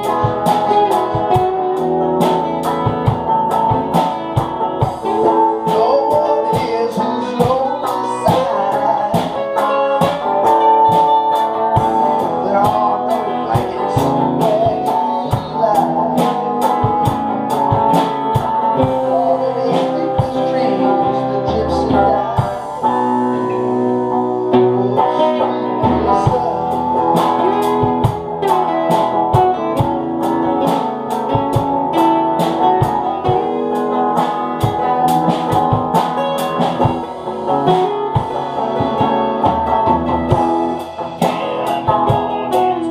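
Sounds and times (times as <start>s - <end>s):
band playing a song: 0.0s - 42.9s.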